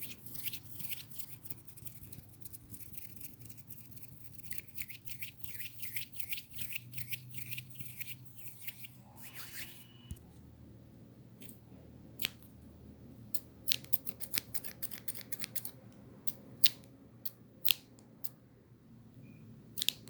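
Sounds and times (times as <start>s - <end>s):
scratchy brushing strokes: 0.0s - 10.2s.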